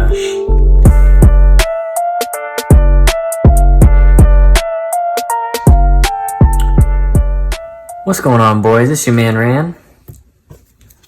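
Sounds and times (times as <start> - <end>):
synth melody: 0.0 - 8.7.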